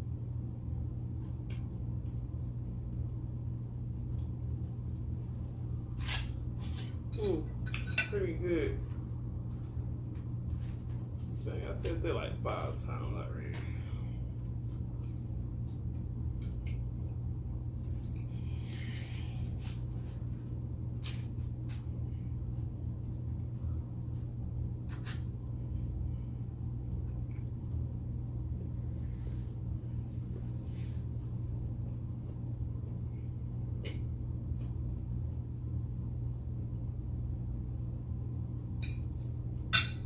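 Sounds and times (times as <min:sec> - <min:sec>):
low steady hum: 0:00.0 - 0:40.0
soft eating clicks and mouth noises: 0:01.2 - 0:03.2, 0:03.8 - 0:05.1, 0:13.5 - 0:19.0, 0:26.9 - 0:28.9, 0:33.8 - 0:36.2.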